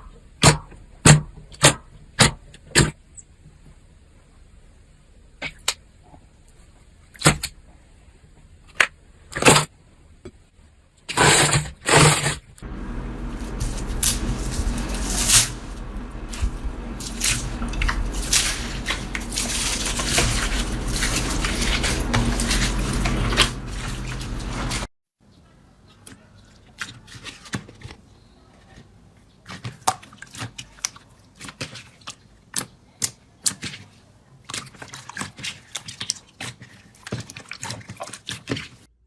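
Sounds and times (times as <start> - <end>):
low hum: 12.6 - 24.9
slime squishing: 12.8 - 24.9.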